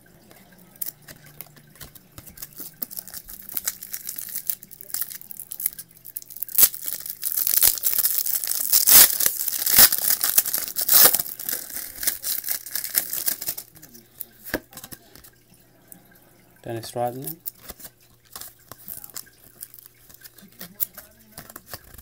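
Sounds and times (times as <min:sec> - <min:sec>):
wrapper tearing and crinkling: 0:00.8 - 0:15.0, 0:17.3 - 0:22.0.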